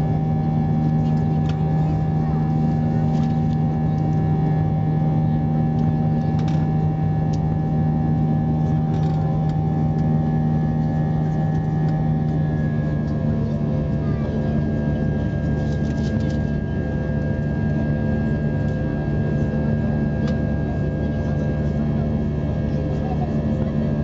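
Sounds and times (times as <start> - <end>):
constant hum: 0.0 - 24.0
jet engines at takeoff power: 0.0 - 24.0.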